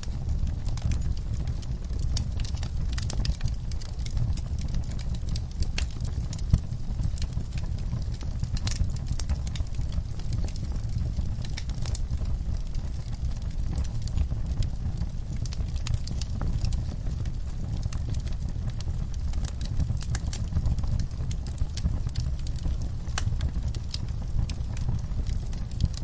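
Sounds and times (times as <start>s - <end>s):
fire snaps and pops: 0.0s - 26.0s
low fire rumble: 0.0s - 26.0s
wood fire crackling: 0.0s - 26.0s.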